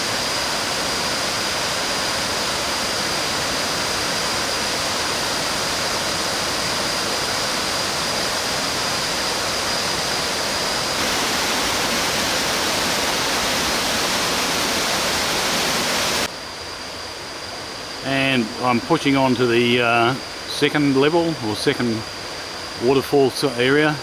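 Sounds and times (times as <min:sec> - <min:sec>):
waterfall rushing: 0:11.0 - 0:16.3.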